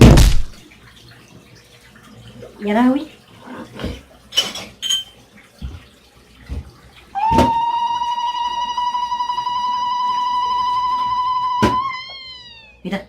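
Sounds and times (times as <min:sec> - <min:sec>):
woman ululating: 0:07.2 - 0:12.8.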